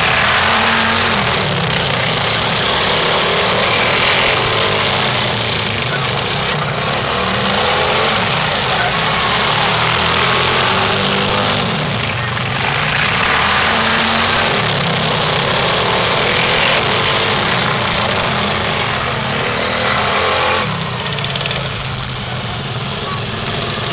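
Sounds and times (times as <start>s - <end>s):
lawn mower engines revving: 0.0s - 23.9s.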